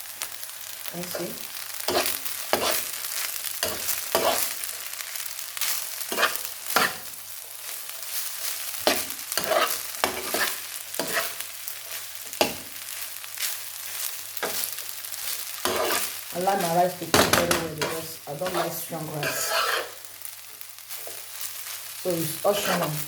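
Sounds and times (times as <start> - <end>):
rice sizzling in a pot: 0.0 - 23.0
spoon stirring and scraping: 1.9 - 3.0, 3.6 - 4.6, 6.0 - 7.1, 8.1 - 11.5, 12.4 - 20.0, 22.5 - 23.0.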